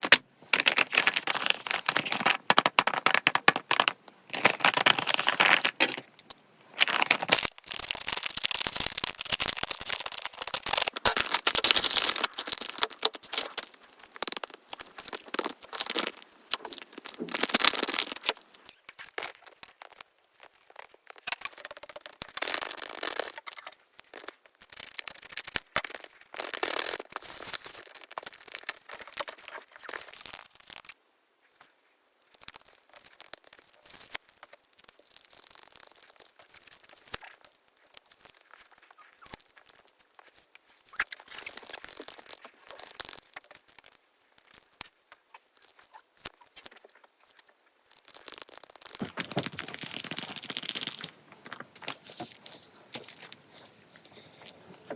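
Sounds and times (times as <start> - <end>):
paper crinkling and tearing: 0.0 - 18.5, 48.1 - 54.9.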